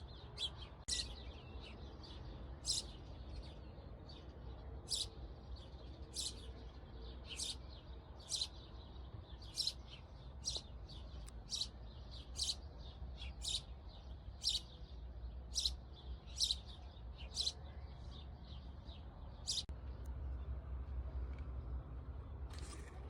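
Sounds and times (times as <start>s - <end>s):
small bird chirping: 0.0s - 3.7s, 4.9s - 6.6s, 7.2s - 19.7s.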